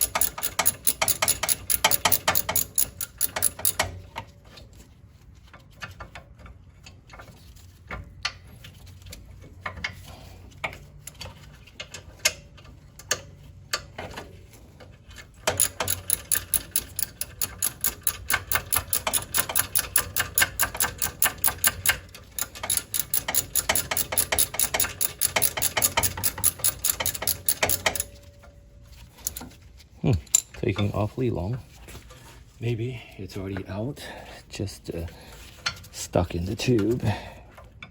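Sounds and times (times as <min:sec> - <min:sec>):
ratchet wrench clicking: 0:00.0 - 0:03.9, 0:15.5 - 0:28.2, 0:29.2 - 0:29.5.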